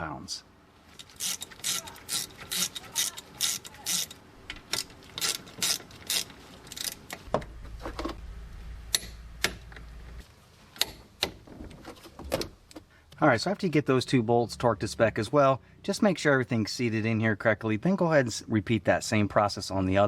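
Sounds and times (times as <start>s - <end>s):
ratchet wrench clicking: 1.0s - 7.1s
low hum: 6.7s - 10.2s.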